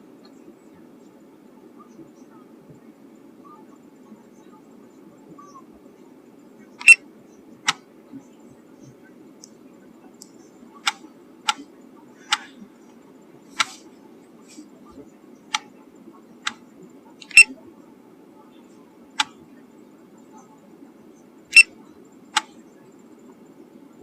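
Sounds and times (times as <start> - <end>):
faint low hum: 0.0 - 24.0
sharp clicks: 6.8 - 7.0.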